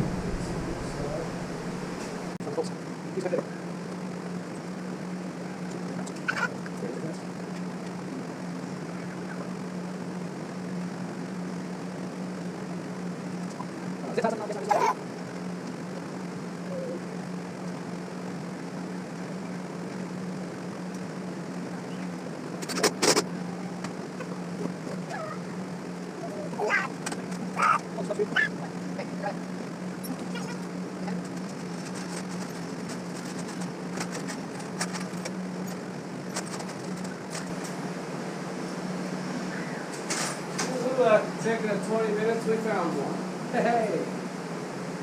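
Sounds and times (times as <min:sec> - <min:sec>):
motor humming with hiss: 0:00.0 - 0:02.4
steady low hum: 0:00.0 - 0:45.0.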